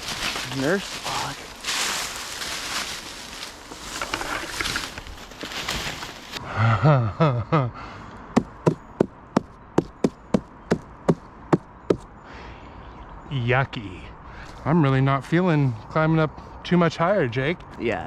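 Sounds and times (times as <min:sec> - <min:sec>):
rustling: 0:00.0 - 0:06.4
sharp knocks on wood: 0:08.4 - 0:12.0.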